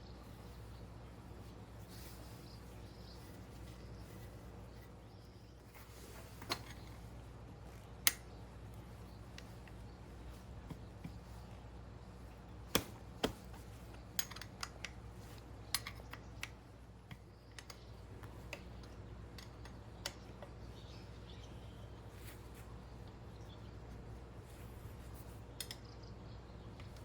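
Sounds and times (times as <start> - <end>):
steady low hum: 0.0 - 27.0
hand tools tapping metal: 14.0 - 15.0, 15.6 - 20.6.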